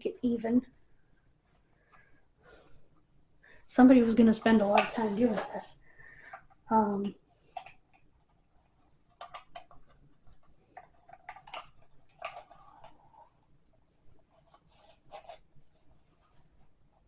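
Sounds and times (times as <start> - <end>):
small clicks of containers: 6.2 - 8.1, 8.7 - 13.3.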